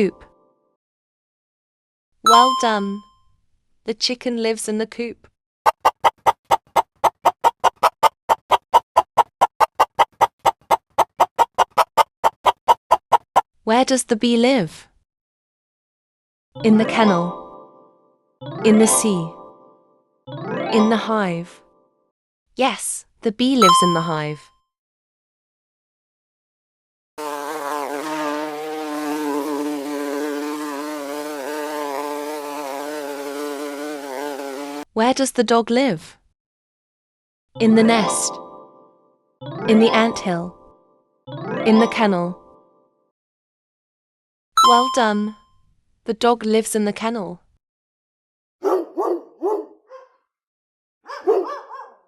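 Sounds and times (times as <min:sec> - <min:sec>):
bee buzzing: 0:27.2 - 0:34.9.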